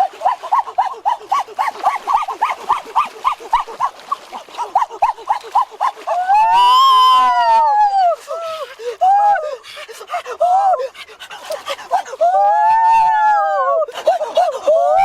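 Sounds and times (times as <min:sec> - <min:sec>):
animal yelping: 0:04.6 - 0:06.6.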